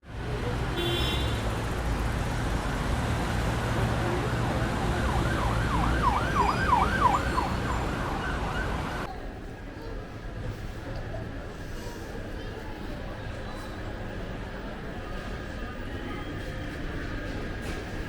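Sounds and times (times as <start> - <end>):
siren sweeping: 4.0 - 9.1.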